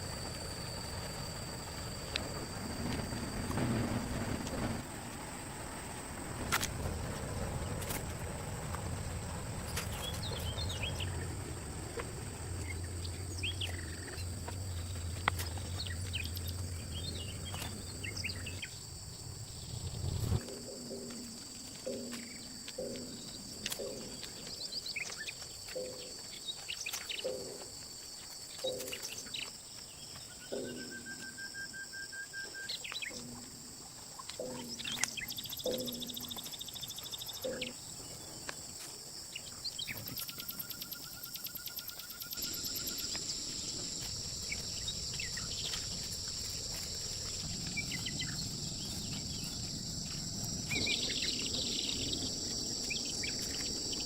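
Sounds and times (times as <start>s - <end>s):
crickets and insects chorus: 0.0s - 54.0s
bird calls: 9.6s - 18.8s, 19.5s - 27.7s, 28.5s - 38.6s, 39.3s - 54.0s.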